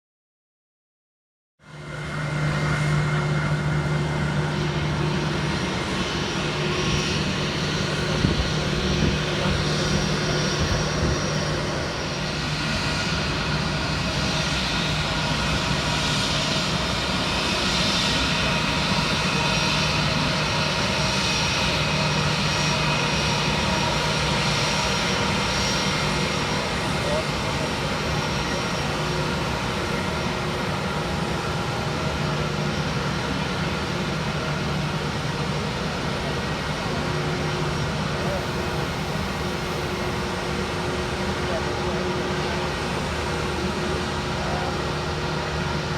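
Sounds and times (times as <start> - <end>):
jet engines whining: 1.7 - 45.9.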